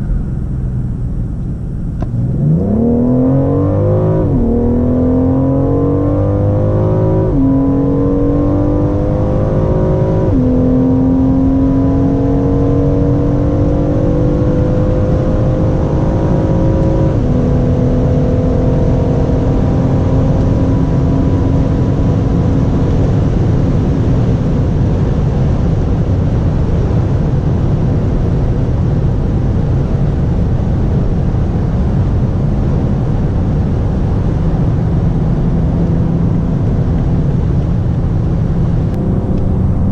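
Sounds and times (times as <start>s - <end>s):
car engine accelerating: 0.0s - 39.9s
wind and road noise: 0.0s - 39.9s.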